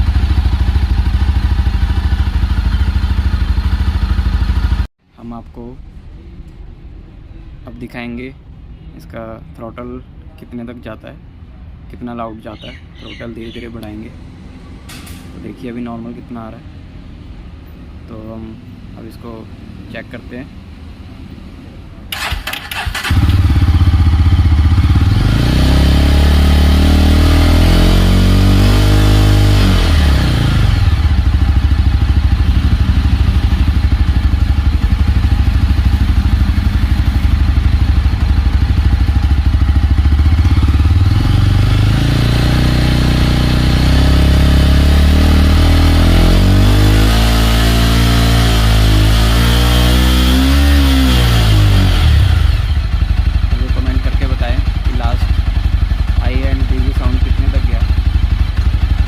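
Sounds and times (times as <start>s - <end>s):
motorcycle engine idling: 0.0s - 4.9s, 22.2s - 25.2s, 30.5s - 41.9s, 51.6s - 59.0s
motorcycle engine revving: 0.0s - 4.9s, 22.1s - 59.0s.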